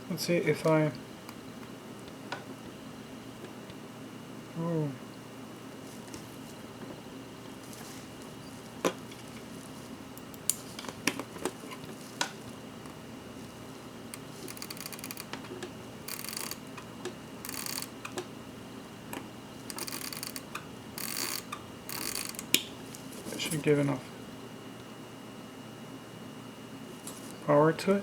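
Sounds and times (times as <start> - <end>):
watch crown scratchy rasps: 16.1 - 16.6, 19.7 - 20.4, 21.0 - 22.4.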